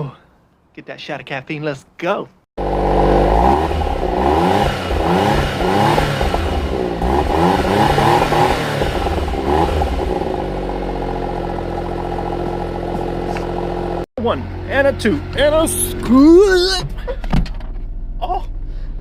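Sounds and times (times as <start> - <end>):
car engine revving: 2.6 - 16.9
car engine idling: 2.6 - 19.0.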